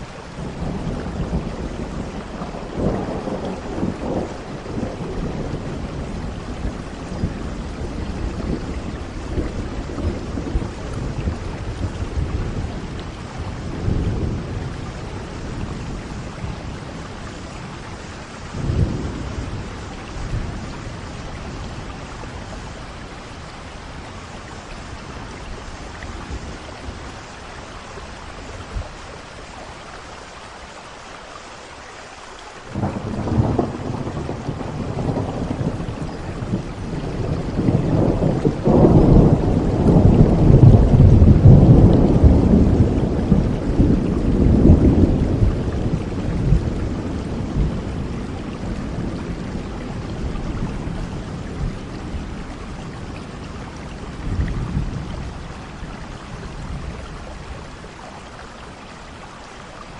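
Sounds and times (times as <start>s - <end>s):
steady rain: 0.0s - 59.9s
thunder rolling: 32.7s - 53.4s.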